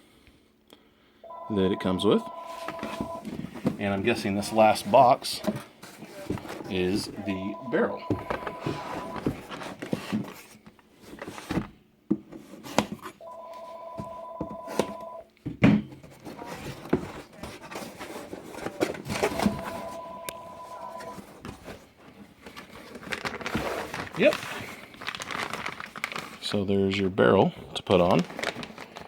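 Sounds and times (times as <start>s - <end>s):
telephone ringing two-tone: 1.3s - 3.2s, 7.2s - 9.2s, 13.2s - 15.2s, 19.3s - 21.2s
cardboard box handled and opened: 2.3s - 11.7s, 16.0s - 26.3s.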